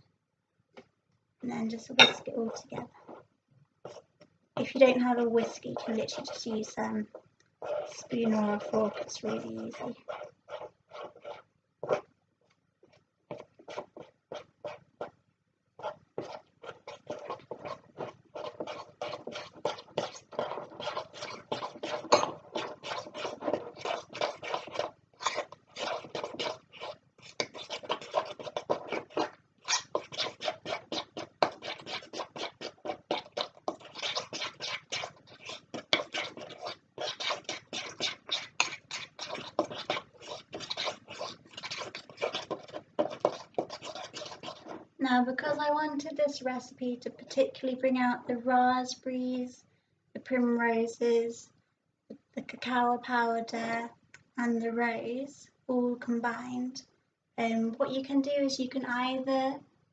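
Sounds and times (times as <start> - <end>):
whisk scraping in a bowl: 1.8 - 3.2, 3.8 - 12.1, 12.8 - 15.2, 15.8 - 45.6.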